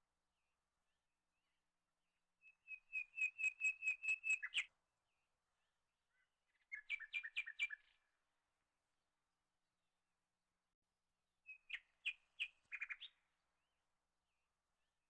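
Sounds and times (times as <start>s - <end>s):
bird singing whistled notes: 2.4s - 4.7s, 6.5s - 8.0s, 11.5s - 13.2s.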